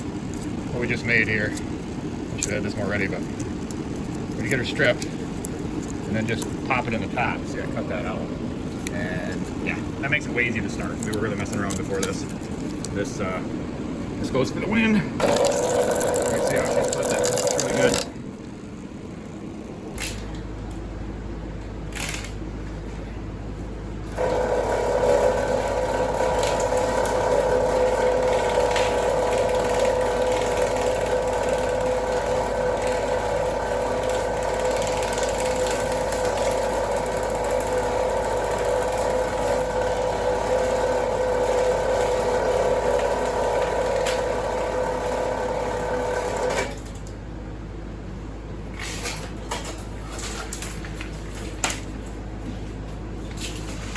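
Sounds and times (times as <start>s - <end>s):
wire-stripping machine whirring: 0.0s - 20.9s, 21.9s - 22.5s, 24.0s - 47.2s.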